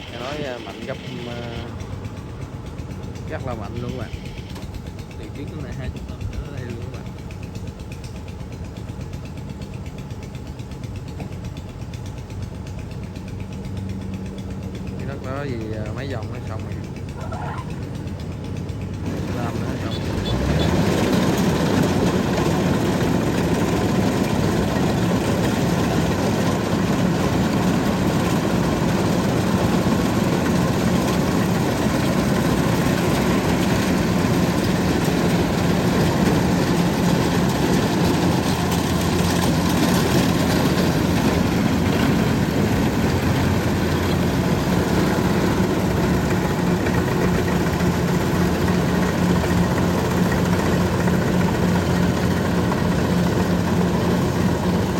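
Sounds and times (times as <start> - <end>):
combine harvester running: 0.0 - 54.9.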